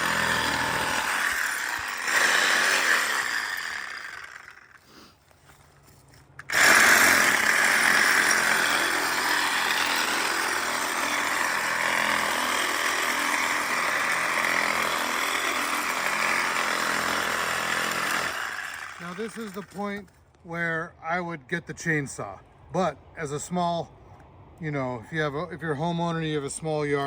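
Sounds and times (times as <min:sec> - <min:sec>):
reciprocating saw cutting branch: 0:00.0 - 0:05.1, 0:06.4 - 0:20.0.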